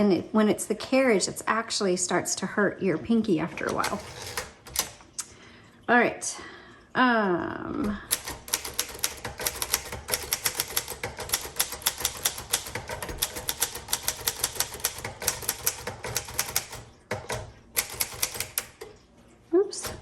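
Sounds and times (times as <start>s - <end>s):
manual typewriter typing: 3.6s - 5.0s, 7.8s - 18.9s.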